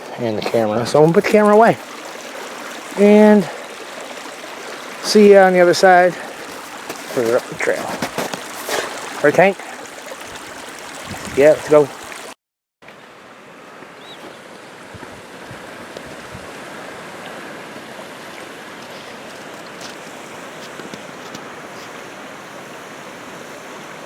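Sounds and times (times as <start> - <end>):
stream running: 0.0 - 24.0.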